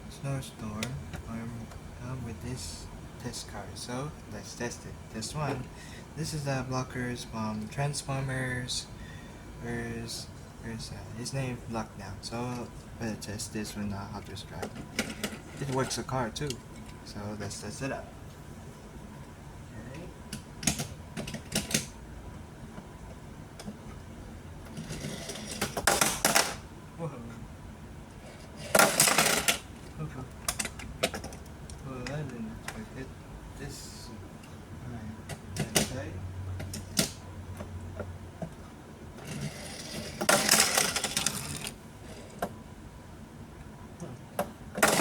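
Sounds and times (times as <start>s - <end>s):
toy car rattling on plastic track: 28.7s - 29.6s, 39.3s - 41.7s, 44.8s - 45.0s
toy car and plastic track clicks: 40.2s - 41.7s.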